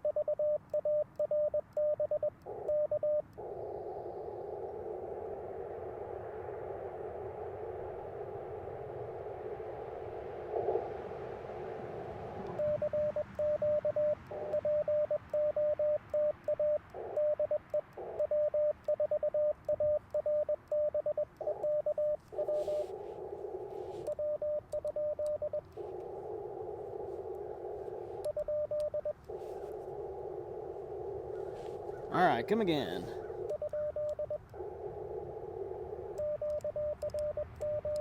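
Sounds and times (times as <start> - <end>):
radio band hiss: 22.2 - 24.2, 25.6 - 28.5, 29.2 - 33.5.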